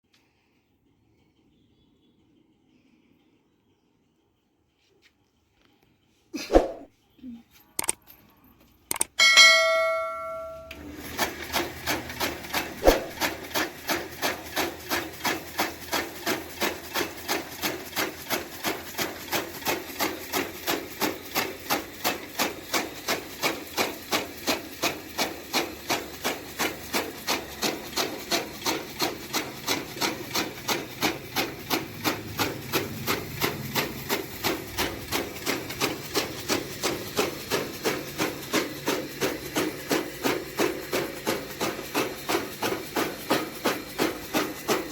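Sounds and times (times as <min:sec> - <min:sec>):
blade strokes: 0:06.4 - 0:06.9, 0:12.8 - 0:13.2.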